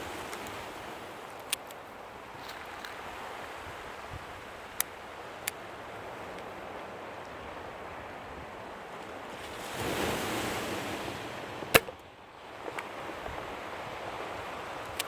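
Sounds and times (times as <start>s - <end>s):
surf washing on shore: 0.0s - 15.0s
faint clicks: 1.2s - 3.0s, 14.8s - 15.0s
air pistol shot: 11.8s - 12.0s.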